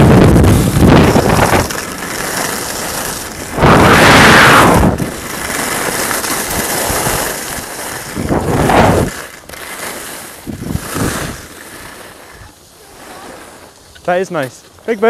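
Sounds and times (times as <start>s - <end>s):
wind buffeting microphone: 0.0s - 1.9s, 3.2s - 5.4s, 6.4s - 9.2s, 10.4s - 11.5s.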